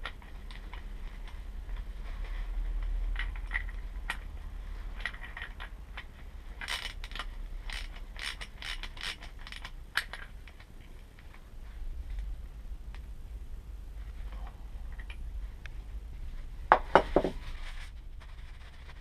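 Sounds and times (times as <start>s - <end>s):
steady low hum: 0.0s - 19.0s
metal tools clicking and scraping: 2.8s - 4.3s, 5.0s - 11.0s.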